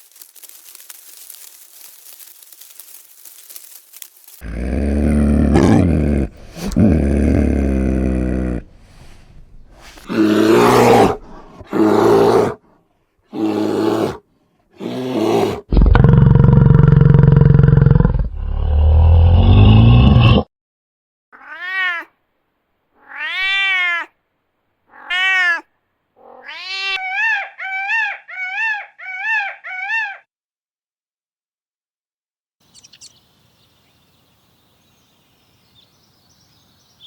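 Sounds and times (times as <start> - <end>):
cat meowing: 21.4 - 22.1, 23.0 - 24.1, 24.9 - 27.0.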